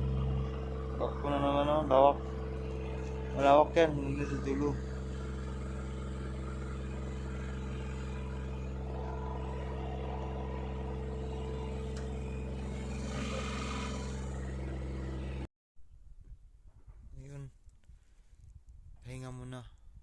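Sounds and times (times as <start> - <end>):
diesel engine running: 0.0 - 15.5.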